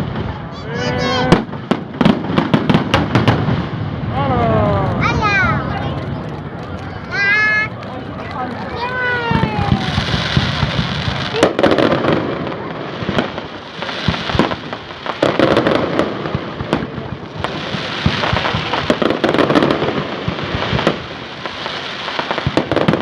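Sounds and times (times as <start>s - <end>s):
fireworks bangs: 0.0s - 23.0s
fireworks crackling: 0.0s - 23.0s.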